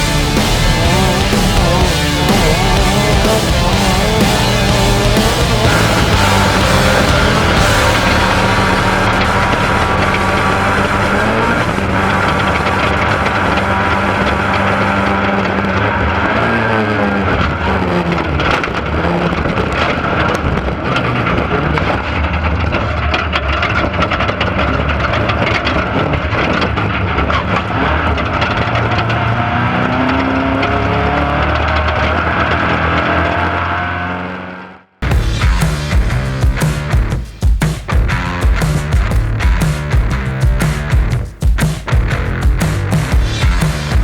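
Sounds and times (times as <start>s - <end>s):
race car engine running hard: 0.0s - 19.3s.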